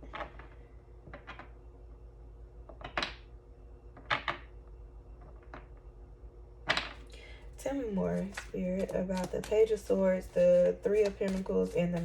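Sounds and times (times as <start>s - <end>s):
cards snapping: 8.2s - 9.8s.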